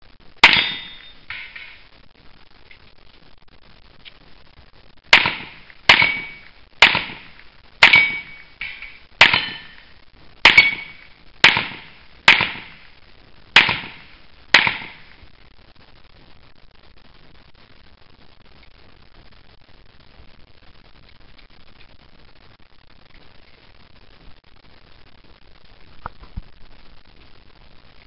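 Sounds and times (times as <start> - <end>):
gunshots: 0.4 - 1.8, 5.1 - 12.9, 13.5 - 15.2.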